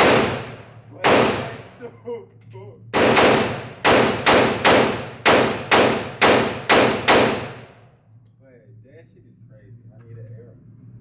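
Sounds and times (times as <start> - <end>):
rifle shots echoing: 0.0 - 1.8, 2.9 - 7.8.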